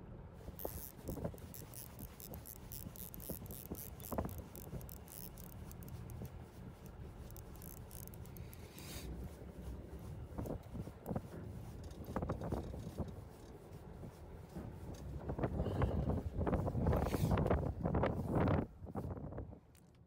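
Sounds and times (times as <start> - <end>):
low rumble of boat and wind: 0.0 - 20.0
fishing reel clicking: 0.6 - 9.1, 10.4 - 13.6.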